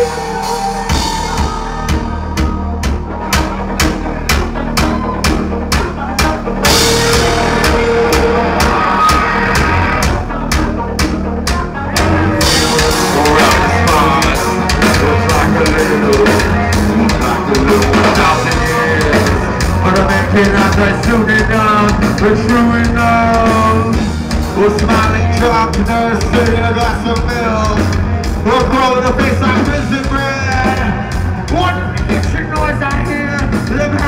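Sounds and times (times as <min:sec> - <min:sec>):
loud metal band playing: 0:00.0 - 0:34.0
drum hits: 0:00.9 - 0:11.2.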